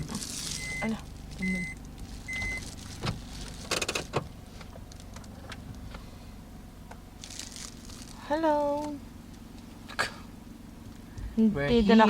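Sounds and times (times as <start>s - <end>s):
car electronic warning beep: 0.0s - 2.8s
rustling clatter: 0.0s - 6.2s, 7.1s - 9.9s
low steady hum: 0.0s - 12.0s.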